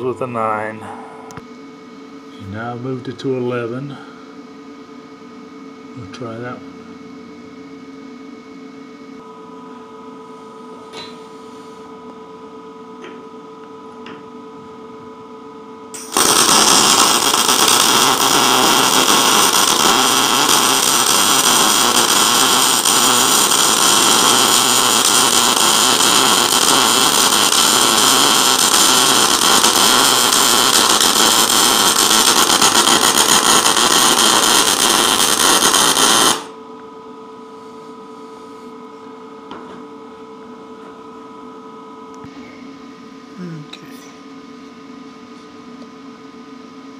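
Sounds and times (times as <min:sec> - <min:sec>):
welding arc crackling hiss: 0:15.9 - 0:36.6.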